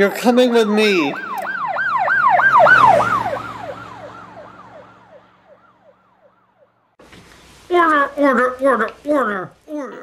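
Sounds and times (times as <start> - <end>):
emergency siren yelping: 0.8 - 7.0.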